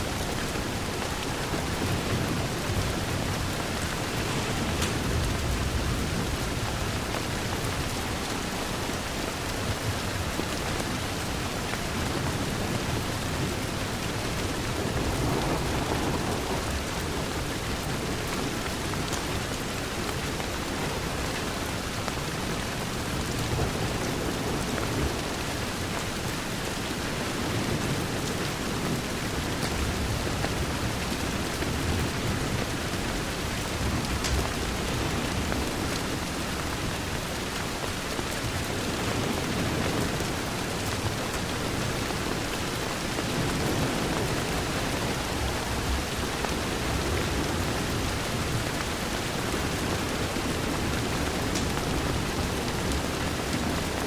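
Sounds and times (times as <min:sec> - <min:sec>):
rain pattering on a window: 0:00.0 - 0:54.0
wood fire crackling: 0:00.8 - 0:07.2.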